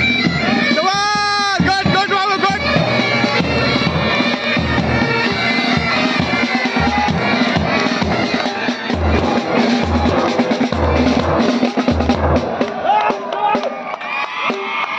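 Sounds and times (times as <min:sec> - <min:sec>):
bagpipes playing over drone: 0:00.0 - 0:11.8
bass drum beats: 0:00.0 - 0:13.3.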